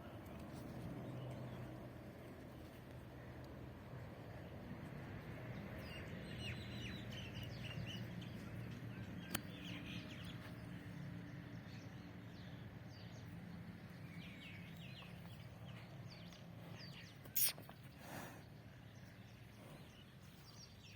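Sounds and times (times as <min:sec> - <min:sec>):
small birds chirping: 0:05.5 - 0:20.9.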